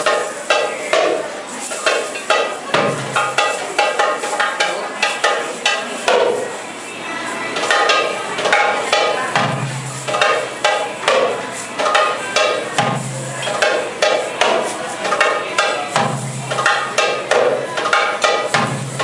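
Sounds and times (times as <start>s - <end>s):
goblet drum fast rhythm: 7.7s - 19.0s.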